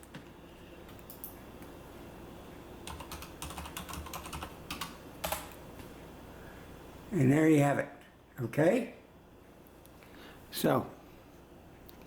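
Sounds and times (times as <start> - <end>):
keyboard typing: 2.8 - 5.6.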